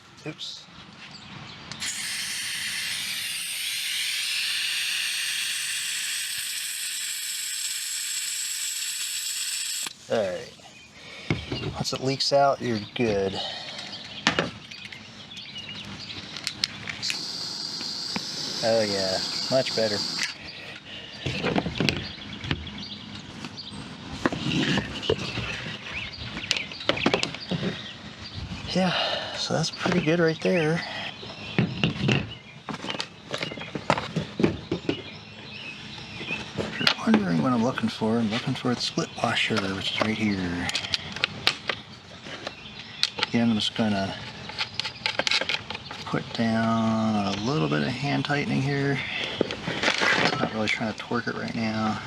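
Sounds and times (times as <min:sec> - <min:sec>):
butane gas hissing: 0:01.8 - 0:10.0, 0:17.0 - 0:20.4.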